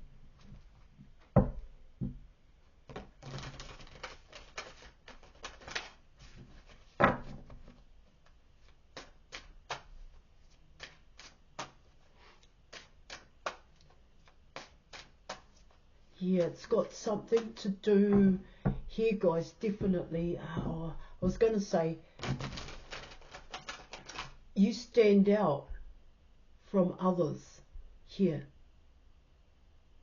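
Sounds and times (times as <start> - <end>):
cards shuffling: 2.9 - 18.8, 22.2 - 24.4.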